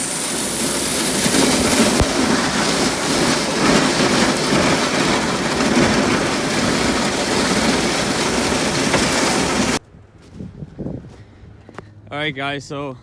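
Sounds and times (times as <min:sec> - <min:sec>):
truck plowing snow rushing: 0:00.0 - 0:09.8.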